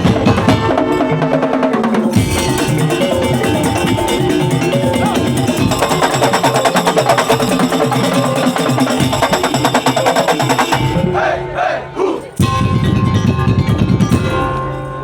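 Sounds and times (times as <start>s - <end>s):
drums and slit drums: 0.0s - 15.0s
voices calling out: 2.4s - 12.4s.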